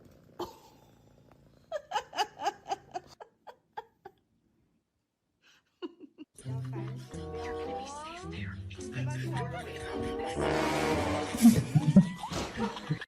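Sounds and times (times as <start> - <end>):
person laughing: 1.7 - 4.2, 5.7 - 7.0, 11.0 - 13.0.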